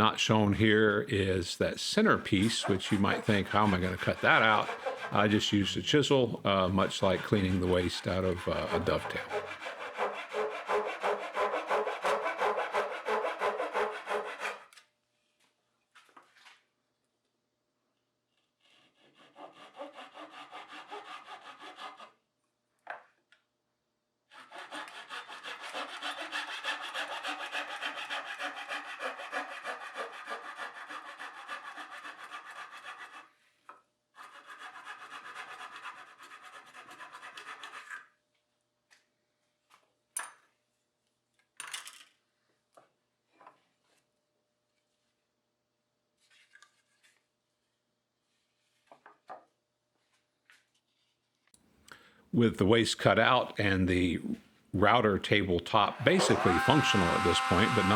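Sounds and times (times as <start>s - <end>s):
hand saw cutting plywood: 2.0s - 14.8s, 18.6s - 22.2s, 24.3s - 33.4s, 34.2s - 38.1s, 54.2s - 57.9s.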